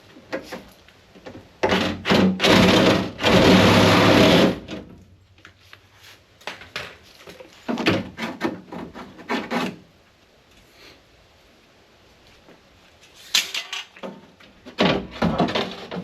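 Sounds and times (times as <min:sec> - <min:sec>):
loud scraping and rubbing: 0:01.6 - 0:04.8, 0:08.2 - 0:09.8
short scrapes and knocks: 0:06.8 - 0:09.8, 0:13.0 - 0:16.0.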